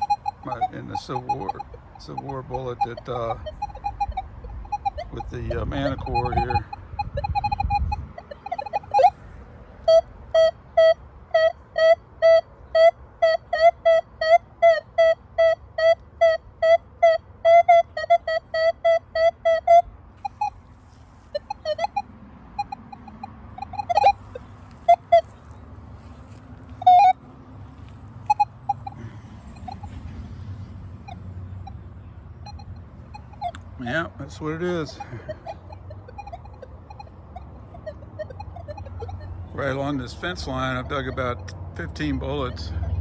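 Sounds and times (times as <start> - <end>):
metal detector beeping: 0.0 - 9.2, 17.7 - 25.6, 26.3 - 27.2, 28.2 - 30.0, 31.0 - 42.6.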